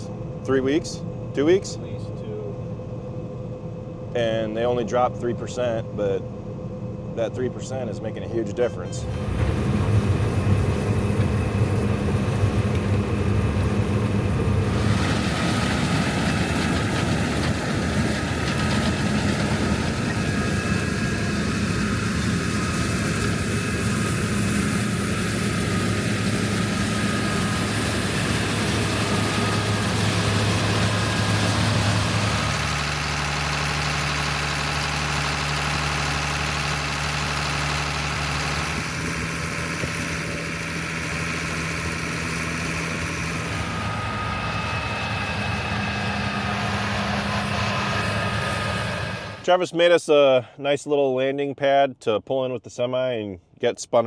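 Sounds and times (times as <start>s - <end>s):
diesel engine running: 0.0s - 49.5s
rushing noise: 9.0s - 49.5s.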